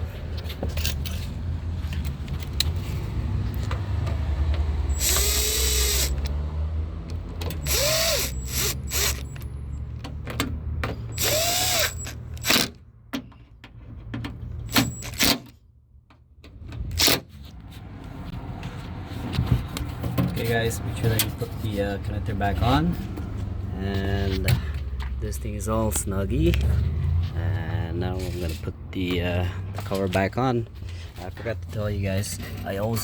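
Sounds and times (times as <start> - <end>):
cordless power driver spinning: 4.9 - 6.4, 7.6 - 9.4, 11.2 - 12.4.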